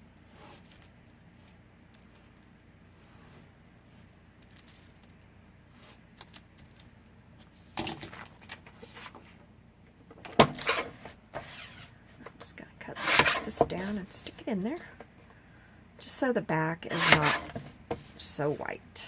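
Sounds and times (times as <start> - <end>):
paper rustling: 8.1 - 9.4.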